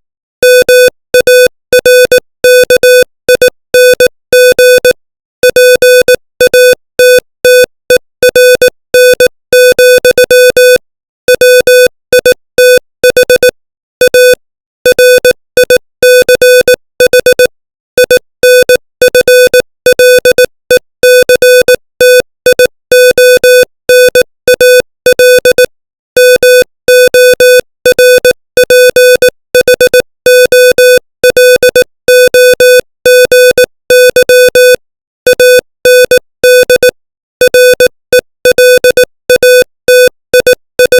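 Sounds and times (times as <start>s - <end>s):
morse code beeps: 0.4s - 40.9s.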